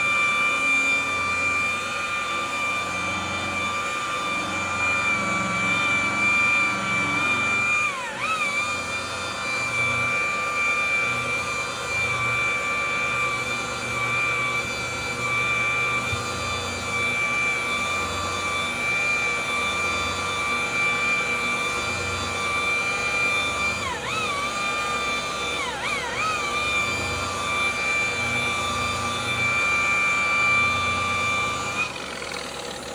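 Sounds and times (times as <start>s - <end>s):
electric polisher whining: 0.0s - 32.9s.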